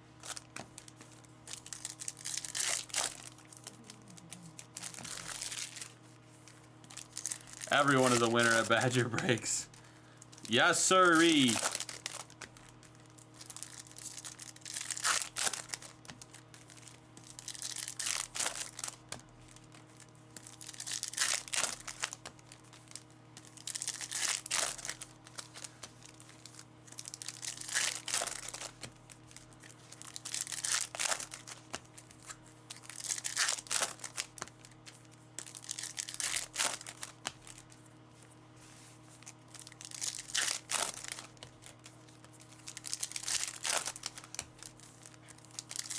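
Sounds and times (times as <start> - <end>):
foil packs tearing: 1.5 - 5.9, 10.3 - 34.7, 35.4 - 37.7, 39.5 - 41.8, 42.4 - 45.9.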